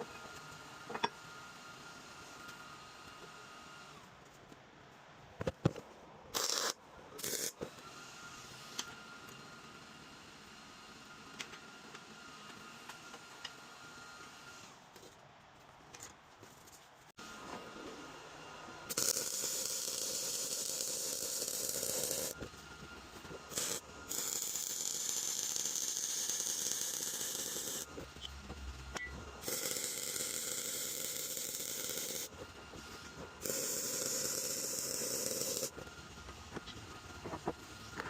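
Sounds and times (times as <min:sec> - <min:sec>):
welder hissing crackle: 0:06.4 - 0:07.6, 0:18.9 - 0:22.4, 0:23.5 - 0:27.9, 0:29.4 - 0:32.3, 0:33.4 - 0:35.8.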